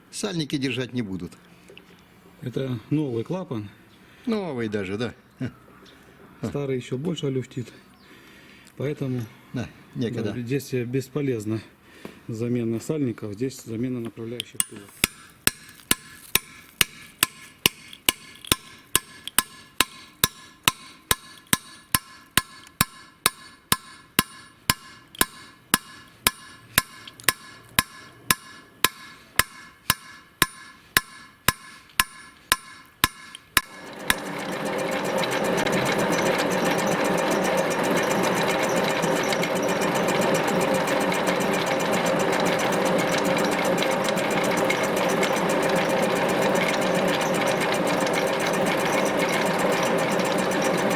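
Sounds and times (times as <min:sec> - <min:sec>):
sharp evenly spaced knocks: 0:14.6 - 0:50.9
machine noise with fast rattle: 0:33.6 - 0:50.9.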